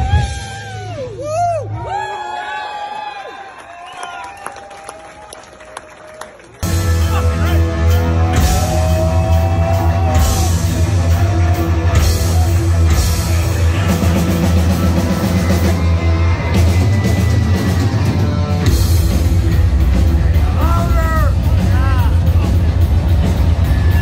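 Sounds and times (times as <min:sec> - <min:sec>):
heavy metal band playing live: 0:00.0 - 0:01.2, 0:06.6 - 0:24.0.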